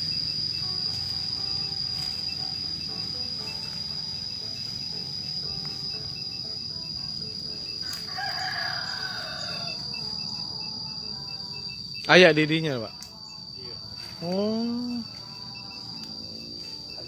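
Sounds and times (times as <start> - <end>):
crickets trilling: 0.0 - 17.0
rooster crowing: 7.6 - 11.9.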